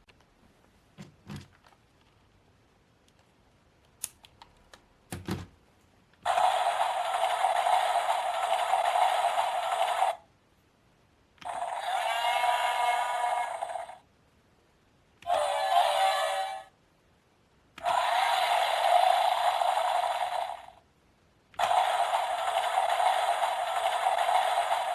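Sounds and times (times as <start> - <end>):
toy whirring sound effect: 6.2 - 10.2, 11.4 - 14.0, 15.2 - 16.7, 17.8 - 20.8, 21.6 - 24.9.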